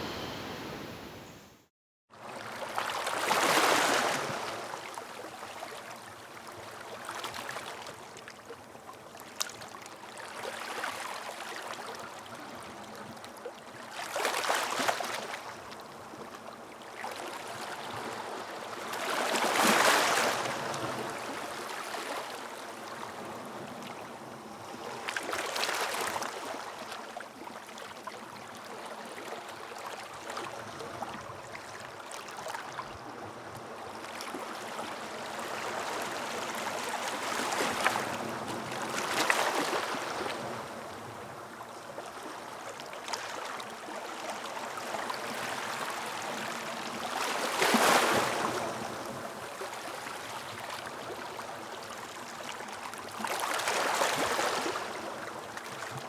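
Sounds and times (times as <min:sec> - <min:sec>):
ocean waves washing on beach: 0:00.0 - 0:01.6.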